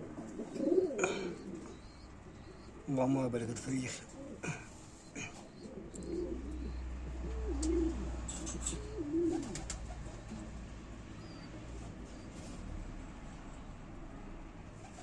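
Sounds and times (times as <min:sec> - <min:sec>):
pigeon cooing: 0:00.0 - 0:02.9, 0:03.8 - 0:12.6.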